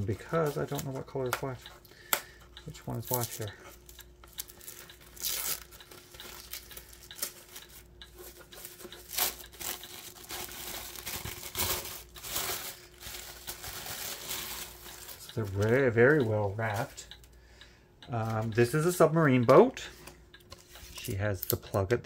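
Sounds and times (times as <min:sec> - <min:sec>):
packaging wrap tearing and rustling: 0:04.4 - 0:07.6, 0:09.1 - 0:15.7.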